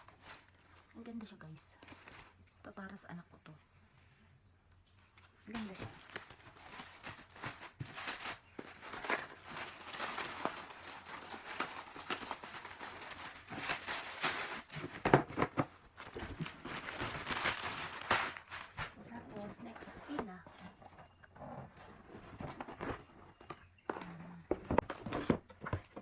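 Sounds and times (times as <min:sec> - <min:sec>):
plastic packaging crinkling: 0:00.0 - 0:02.5, 0:05.3 - 0:20.2.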